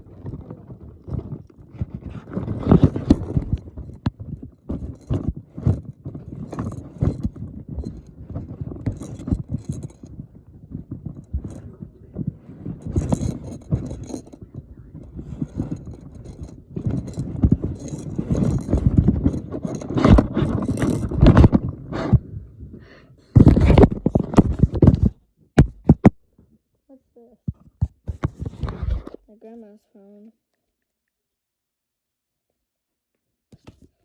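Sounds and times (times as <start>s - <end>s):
small objects clattering: 0.0s - 22.2s.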